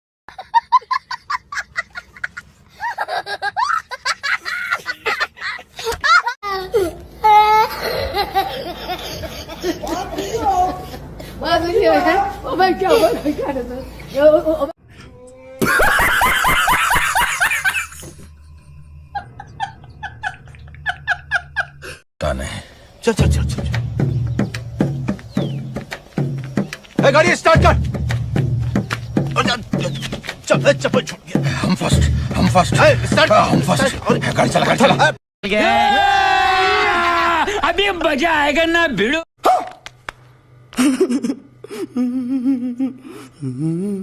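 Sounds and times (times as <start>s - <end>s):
high-pitched laughing: 0.3s - 11.2s, 15.4s - 18.1s, 40.8s - 43.1s.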